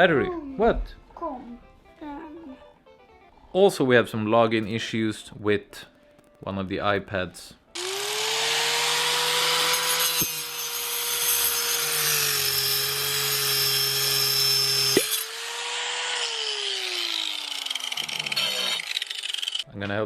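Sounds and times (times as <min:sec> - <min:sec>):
small electric motor whining: 0:07.8 - 0:19.6.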